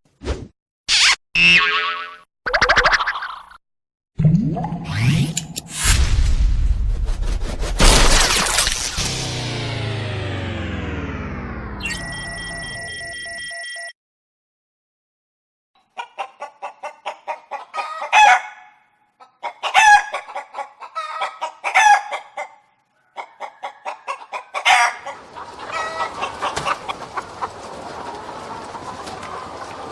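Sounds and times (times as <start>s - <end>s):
hen clucking and squawking: 15.8s - 29.9s
fowl calling together: 16.0s - 18.7s, 19.4s - 22.6s.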